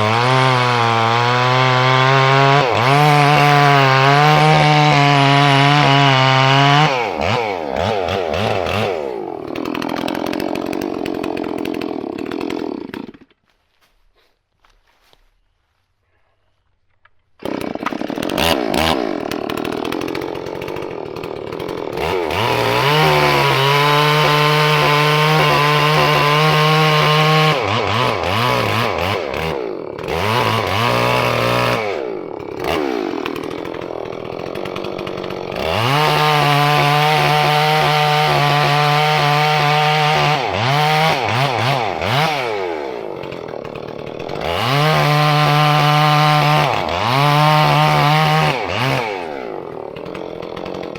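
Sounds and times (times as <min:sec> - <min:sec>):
chainsaw engine revving: 0:00.0 - 0:13.4, 0:17.3 - 0:50.9.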